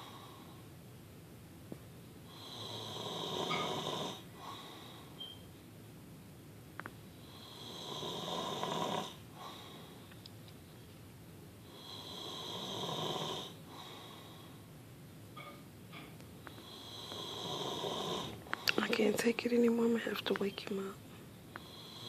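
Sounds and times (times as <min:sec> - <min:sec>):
man snoring: 0:02.3 - 0:04.2, 0:07.2 - 0:09.2, 0:11.7 - 0:13.6, 0:16.6 - 0:18.4, 0:21.6 - 0:22.0.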